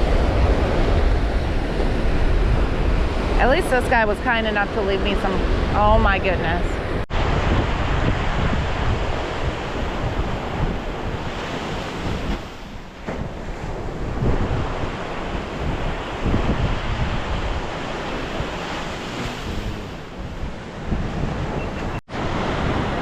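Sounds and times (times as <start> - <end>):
surf breaking on beach: 0.0 - 23.0
wind buffeting microphone: 0.0 - 23.0.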